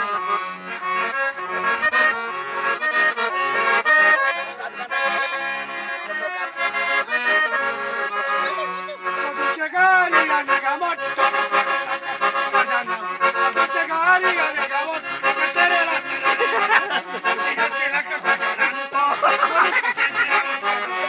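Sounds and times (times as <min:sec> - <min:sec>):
accordion playing a tune: 0:00.0 - 0:21.0.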